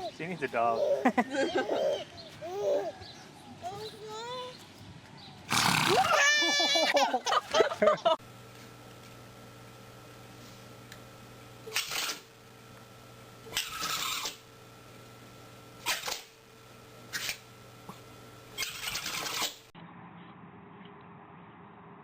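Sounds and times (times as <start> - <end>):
pet sneezing: 5.5 - 6.2.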